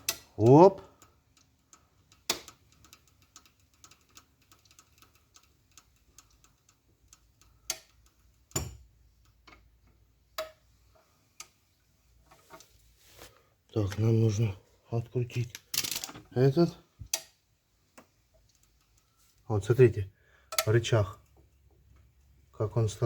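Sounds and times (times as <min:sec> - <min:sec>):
metallic clicks and knocks: 0:00.0 - 0:10.7, 0:15.4 - 0:16.4, 0:20.5 - 0:22.1.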